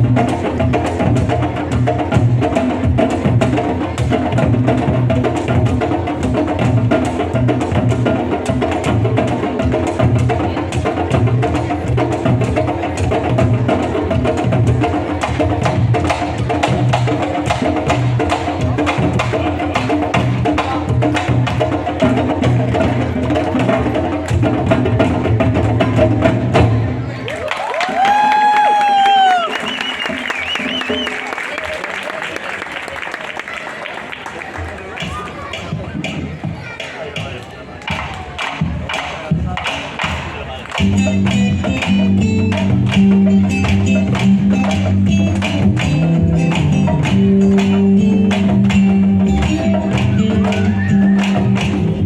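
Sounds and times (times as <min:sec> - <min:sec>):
drum ensemble playing: 0:00.0 - 0:31.6, 0:34.9 - 0:52.0.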